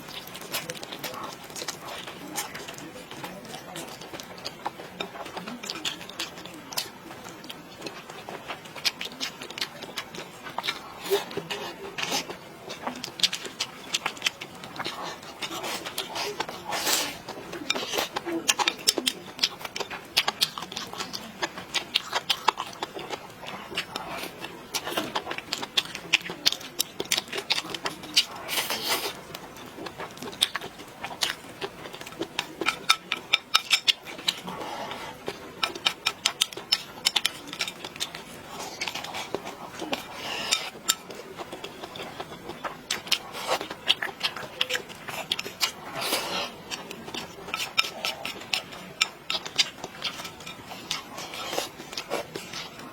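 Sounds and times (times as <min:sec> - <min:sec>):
chewing and mouth noises: 0:00.0 - 0:52.9.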